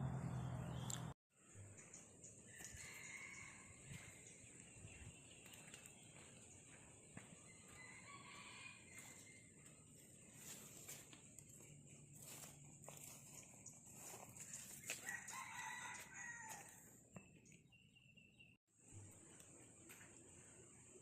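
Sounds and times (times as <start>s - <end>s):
faint rooster crowing: 2.5s - 4.6s, 7.3s - 10.9s, 14.4s - 17.0s.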